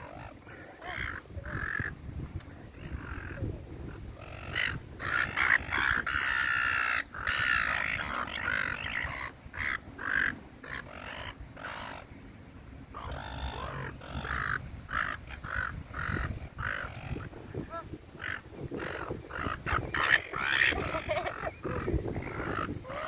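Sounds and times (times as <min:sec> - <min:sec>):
seagulls squawking: 0:04.2 - 0:12.0, 0:13.0 - 0:17.3, 0:18.2 - 0:23.0.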